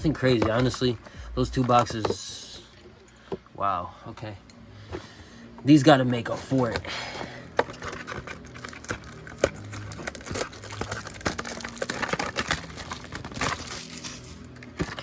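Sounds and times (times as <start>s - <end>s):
plastic and foil crinkling: 0.1s - 2.7s, 6.6s - 15.0s.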